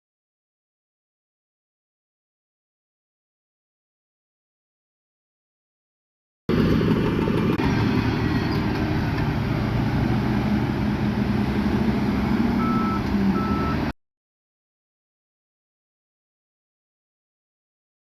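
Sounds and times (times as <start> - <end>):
heavy diesel machinery rumbling: 6.5 - 13.9
reversing alarm beeps: 12.6 - 13.9.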